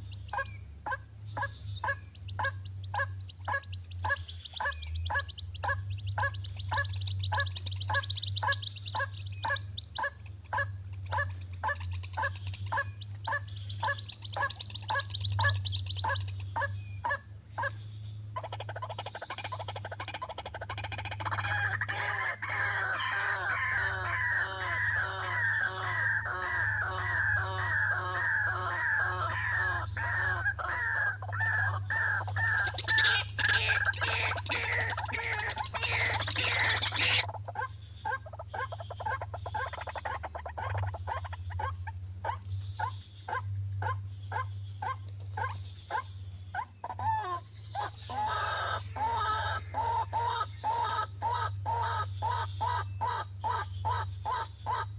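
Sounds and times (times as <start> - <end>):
waterhen calling harsh notes: 18.4 - 41.7, 46.8 - 54.9.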